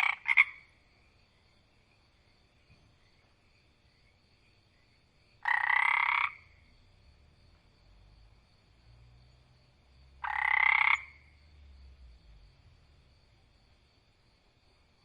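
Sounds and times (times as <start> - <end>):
frog croaking: 0.0 - 0.8, 5.4 - 6.7, 10.1 - 11.7.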